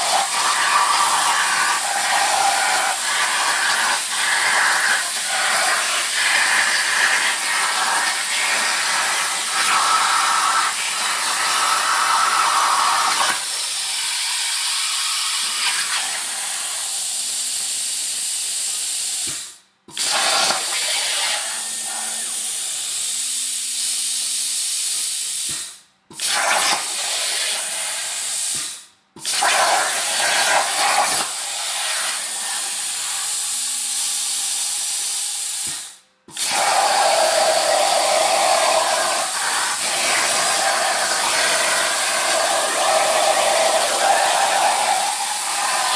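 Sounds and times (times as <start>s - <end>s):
plasma torch hissing: 0.0s - 45.9s.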